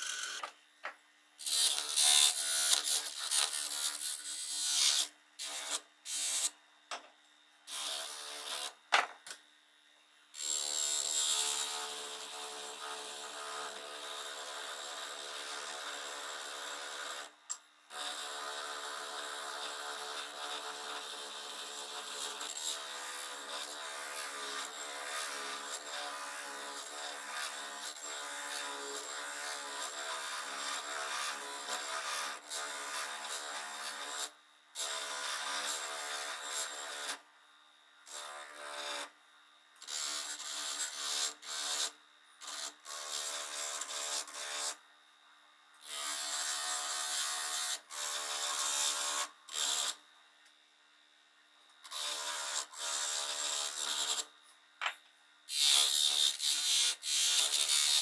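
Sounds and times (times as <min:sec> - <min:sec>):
powered tool grinding metal: 0:00.0 - 0:00.6, 0:01.4 - 0:06.6, 0:07.7 - 0:09.2, 0:51.8 - 0:54.3, 0:55.5 - 0:58.0.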